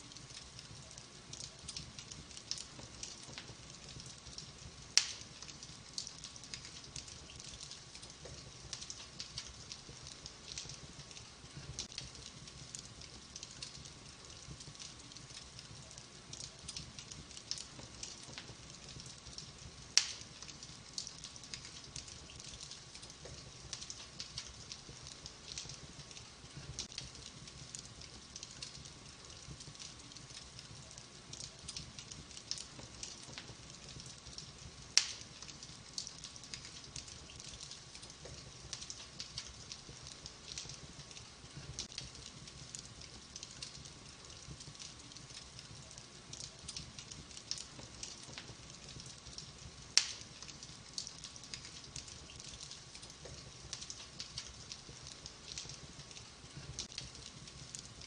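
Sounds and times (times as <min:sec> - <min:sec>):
wood fire crackling: 0:00.0 - 0:58.0
loud fire pops: 0:01.4 - 0:12.8, 0:16.7 - 0:27.8, 0:31.4 - 0:42.8, 0:46.4 - 0:57.9.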